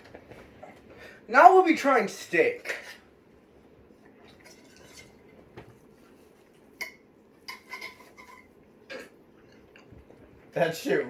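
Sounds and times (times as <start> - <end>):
cutlery and dishes clinking: 4.4 - 5.3, 6.8 - 10.0.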